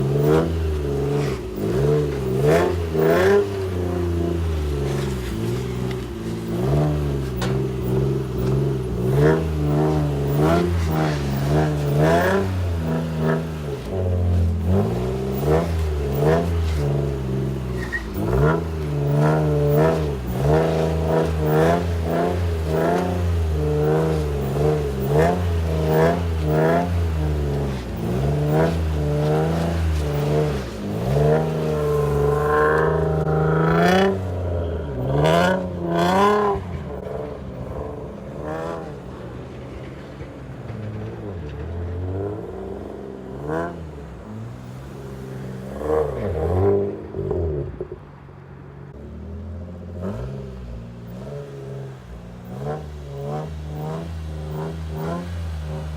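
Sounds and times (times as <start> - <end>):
exhaust cracks: 0.0 - 44.7
car engine revving: 0.0 - 55.9.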